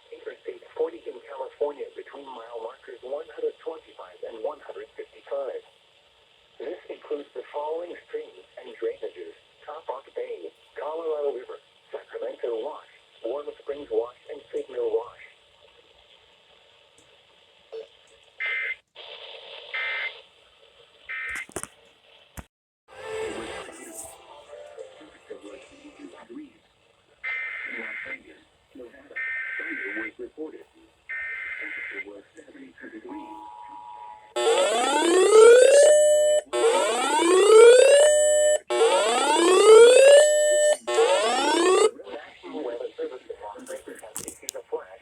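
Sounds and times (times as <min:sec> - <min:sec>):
radio hiss: 0:00.0 - 0:22.2, 0:22.9 - 0:37.3, 0:38.9 - 0:45.0
buzzy data bursts: 0:34.4 - 0:41.9
electronic whooping siren: 0:34.4 - 0:42.0.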